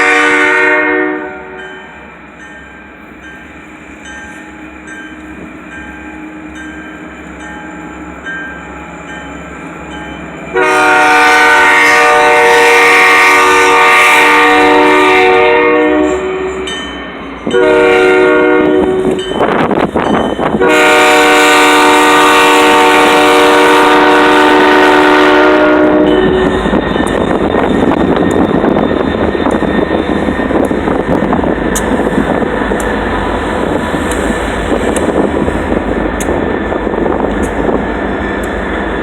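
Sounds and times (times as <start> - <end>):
locomotive air horn blasts: 0.0 - 1.6, 10.5 - 16.7, 17.5 - 19.2, 20.5 - 26.7
locomotive rumble: 0.0 - 39.0.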